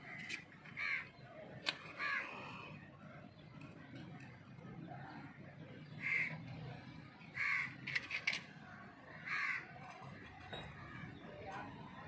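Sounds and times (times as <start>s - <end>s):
crow cawing: 0.8s - 1.2s, 2.0s - 2.6s, 6.0s - 6.4s, 7.3s - 7.8s, 9.2s - 9.7s.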